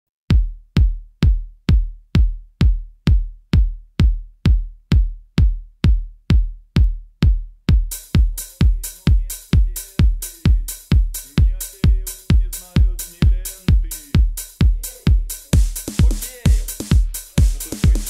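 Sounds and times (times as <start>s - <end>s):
drum machine kick beat: 0.3s - 18.0s
hi-hats: 7.9s - 18.0s.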